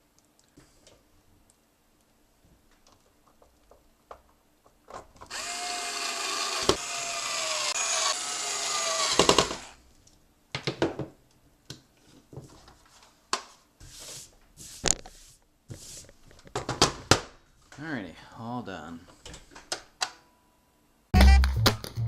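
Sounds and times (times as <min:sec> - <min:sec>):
power screwdriver whining: 0:05.3 - 0:09.8.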